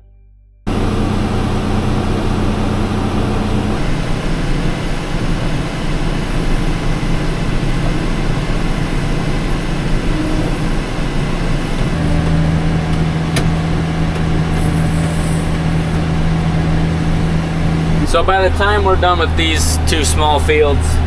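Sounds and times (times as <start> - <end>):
tractor engine droning: 0.7 - 21.0.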